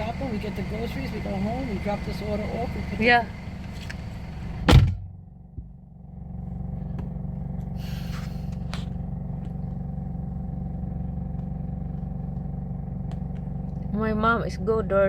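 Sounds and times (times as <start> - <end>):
car interior rumble: 0.0 - 15.0
loud thump: 4.6 - 5.8.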